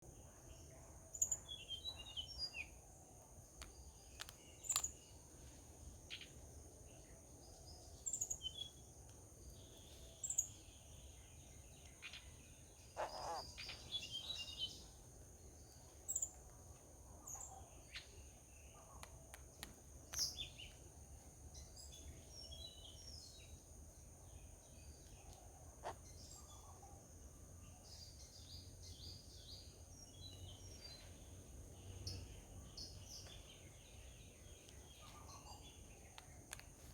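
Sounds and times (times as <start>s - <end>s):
birds chirping and calling: 11.8s - 14.9s.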